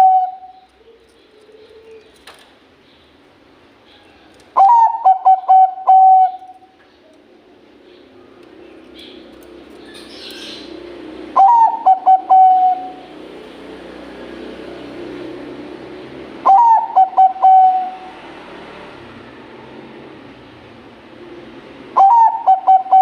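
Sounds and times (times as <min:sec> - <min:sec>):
dove cooing: 0:00.0 - 0:02.1, 0:04.6 - 0:06.7, 0:11.4 - 0:13.2, 0:16.4 - 0:18.2, 0:21.9 - 0:23.0.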